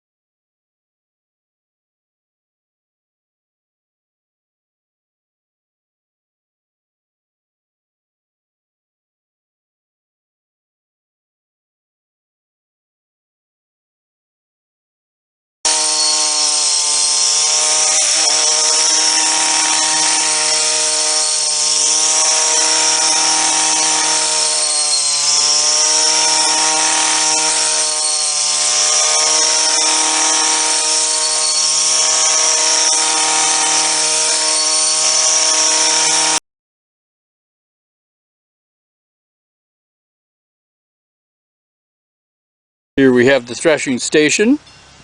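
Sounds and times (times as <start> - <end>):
machine humming drone: 15.7 - 36.4
rushing hiss: 15.7 - 36.4.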